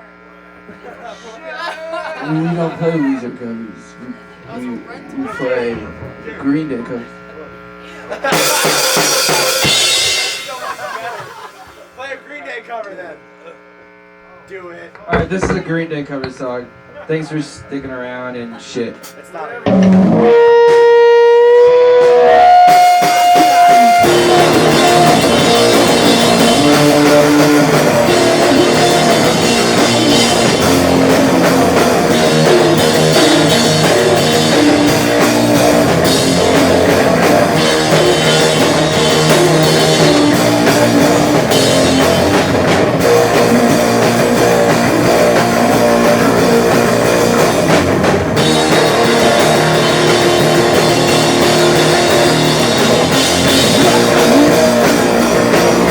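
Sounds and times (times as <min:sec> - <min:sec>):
loud rock band playing: 0:08.1 - 0:12.0, 0:19.6 - 0:55.9
lone electric guitar notes: 0:19.7 - 0:55.9.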